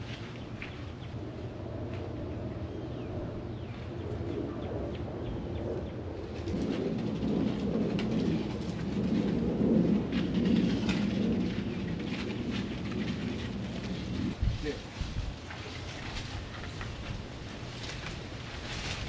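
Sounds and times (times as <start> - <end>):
birds chirping: 0.0 - 6.6
low rumbling noise: 0.0 - 19.0.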